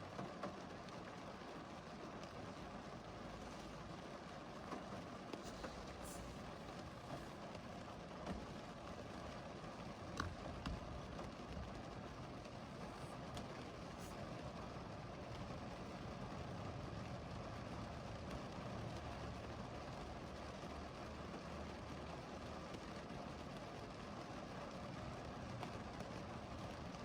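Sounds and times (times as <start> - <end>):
steady rain hiss: 0.1 - 27.0.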